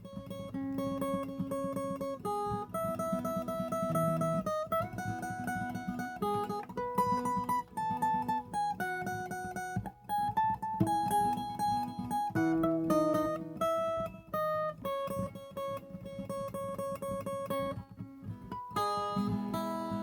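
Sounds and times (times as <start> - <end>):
guitar melodic solo: 0.0 - 20.0.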